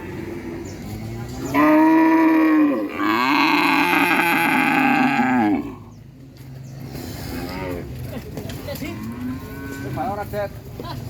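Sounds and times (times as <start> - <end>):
faint mooing: 1.4 - 5.9
cow mooing: 1.5 - 5.8.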